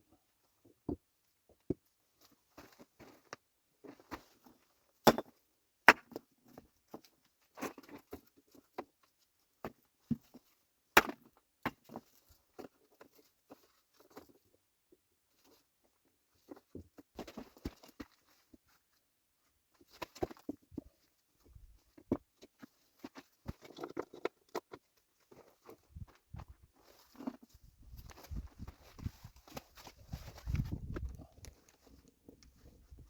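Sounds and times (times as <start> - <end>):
wood chopping knocks and cracks: 5.0 - 5.3, 11.0 - 11.8
crunchy wood scrapes: 22.8 - 33.0.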